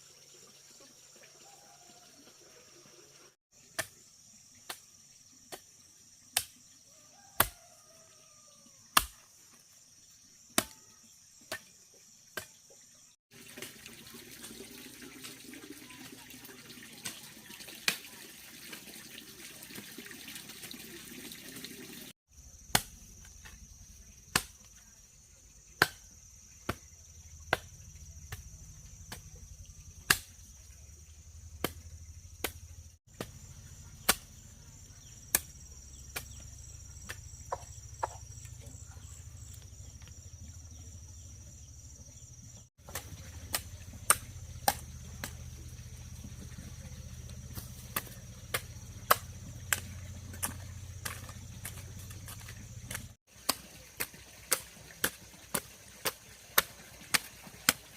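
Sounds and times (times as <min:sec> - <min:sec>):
insect trill: 0:00.0 - 0:13.2, 0:22.3 - 0:54.0.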